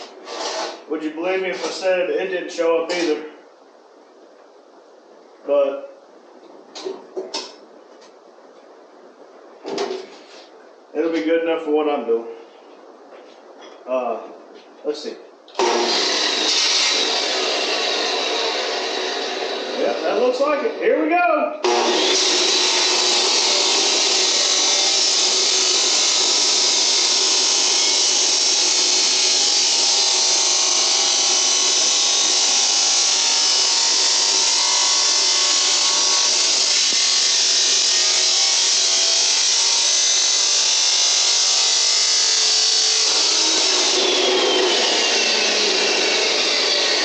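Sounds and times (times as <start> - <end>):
power saw cutting pipe: 15.6 - 20.8, 21.6 - 47.0.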